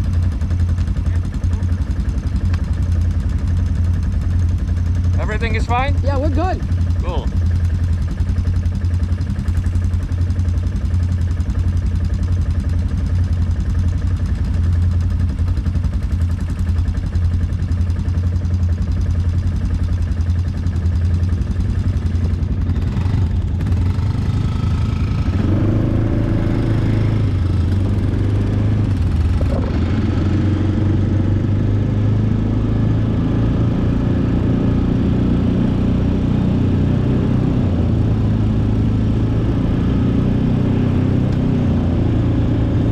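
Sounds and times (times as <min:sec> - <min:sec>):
atv engine running: 0:00.0 - 0:42.9.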